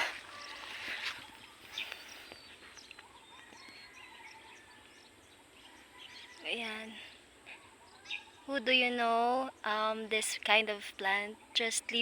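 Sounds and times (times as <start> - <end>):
bird chirps: 0.1 - 8.5.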